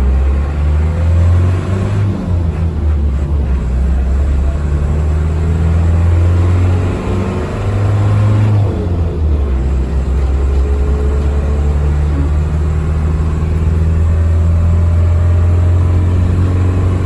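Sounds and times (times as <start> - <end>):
vehicle engine droning: 0.0 - 17.0.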